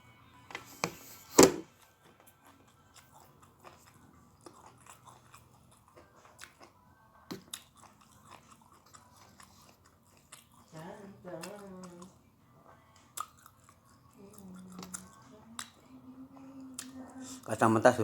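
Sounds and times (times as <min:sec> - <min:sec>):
person chewing crunchy food: 0:01.0 - 0:10.8, 0:13.0 - 0:15.8.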